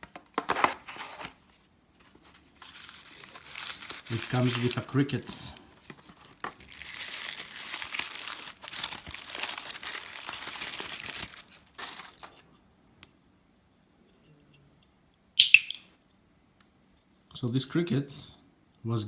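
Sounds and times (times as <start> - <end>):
plastic packaging crinkling: 2.3 - 12.4.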